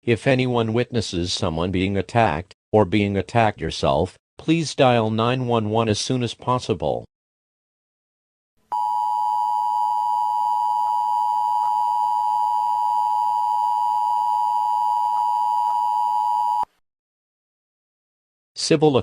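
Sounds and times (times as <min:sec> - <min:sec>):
two-tone electronic alarm: 0:08.7 - 0:16.7.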